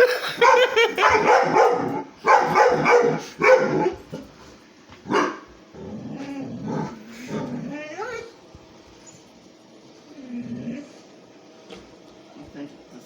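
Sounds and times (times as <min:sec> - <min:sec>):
dog barking: 0:00.4 - 0:04.0, 0:05.1 - 0:05.5.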